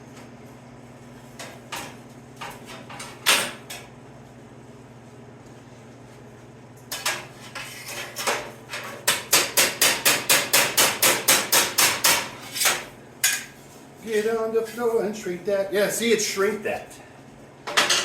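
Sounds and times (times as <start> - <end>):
hammer striking sheet steel: 9.0 - 13.5.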